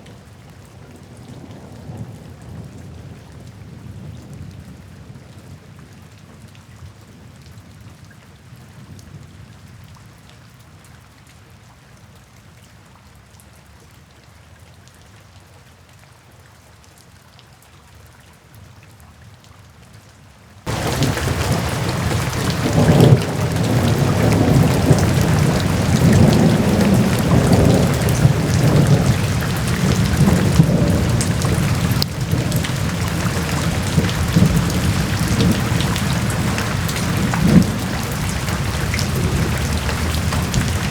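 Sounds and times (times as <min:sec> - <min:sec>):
rain falling: 0:00.0 - 0:11.1, 0:20.7 - 0:40.9
rolling thunder rumbles: 0:20.7 - 0:40.9.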